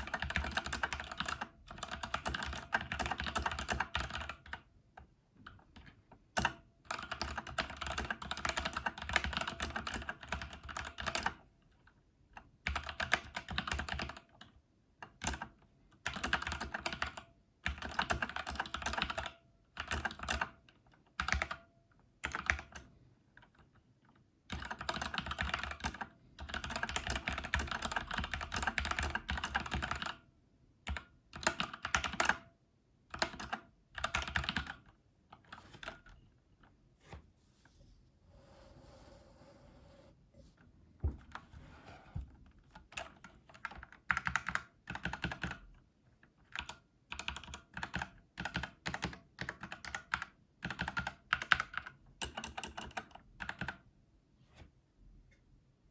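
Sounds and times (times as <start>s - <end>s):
mechanical keyboard typing: 0.0s - 4.7s, 5.8s - 11.4s, 12.4s - 22.9s, 24.5s - 30.2s, 30.8s - 32.5s, 33.1s - 36.1s, 42.7s - 45.7s, 46.4s - 53.8s.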